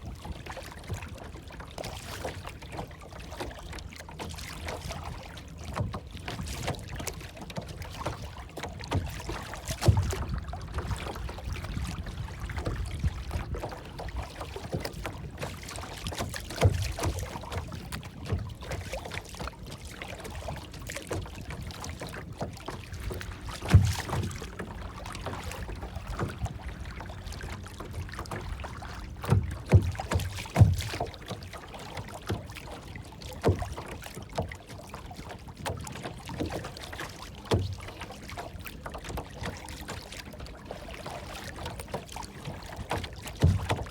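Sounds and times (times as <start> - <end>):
water lapping and sloshing: 0.0 - 43.9
short low knocks: 9.8 - 11.0, 23.4 - 31.1, 43.3 - 43.9.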